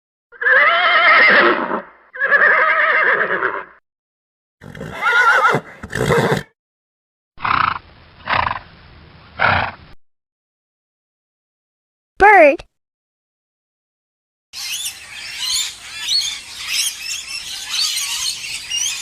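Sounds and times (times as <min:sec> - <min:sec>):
horse neighing: 0:00.3 - 0:03.8, 0:04.6 - 0:06.5
horse blowing breathily: 0:04.6 - 0:06.5.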